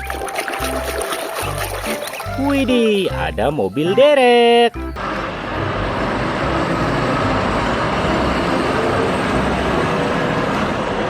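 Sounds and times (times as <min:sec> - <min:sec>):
water spraying: 0:00.0 - 0:03.3.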